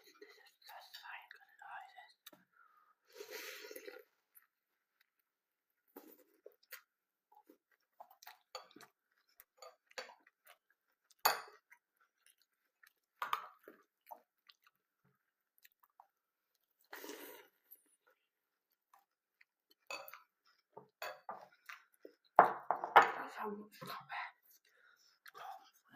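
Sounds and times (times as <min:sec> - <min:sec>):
chewing crunchy cereal: 0:03.6 - 0:20.7.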